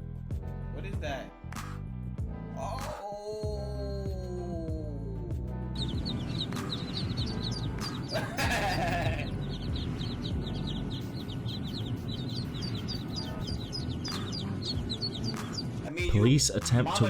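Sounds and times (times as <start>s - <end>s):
birds chirping: 5.4s - 17.0s
harsh bird call: 5.7s - 15.9s.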